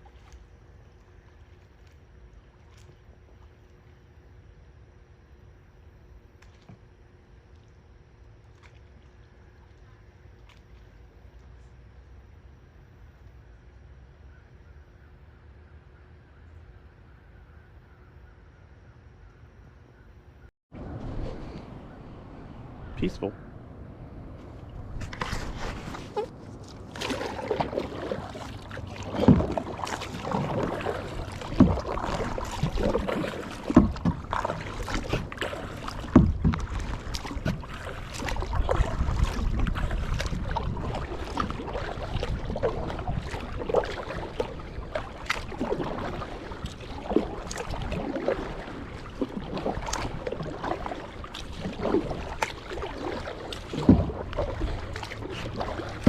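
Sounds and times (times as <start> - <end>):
kayak paddle splashing in water: 0.0 - 3.8, 8.4 - 11.2, 24.6 - 56.0
dripping water: 27.0 - 56.0.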